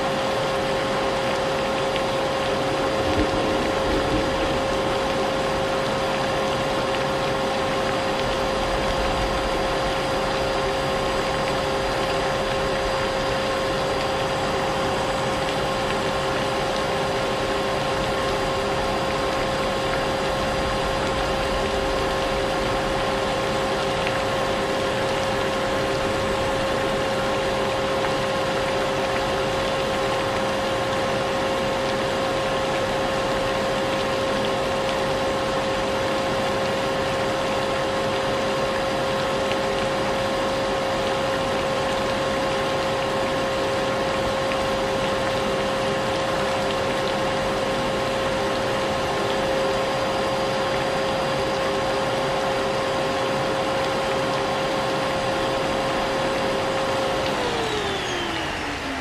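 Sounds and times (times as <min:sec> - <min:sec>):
rain hissing: 0:01.1 - 0:27.6, 0:54.6 - 0:59.0
vacuum cleaner running: 0:55.2 - 0:59.0.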